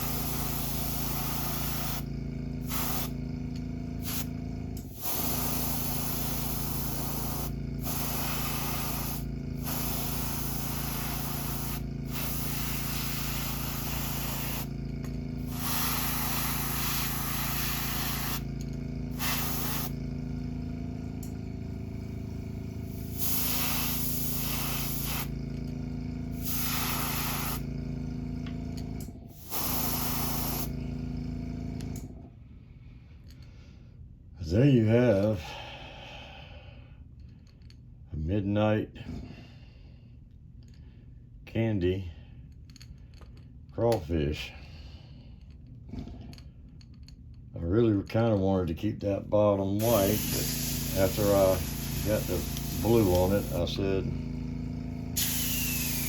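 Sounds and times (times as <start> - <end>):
airbrush hissing: 0.0 - 3.4, 4.0 - 14.8, 15.4 - 20.0, 22.8 - 25.4, 26.3 - 27.7, 29.3 - 30.7, 49.8 - 56.0
steady low hum: 0.0 - 56.0.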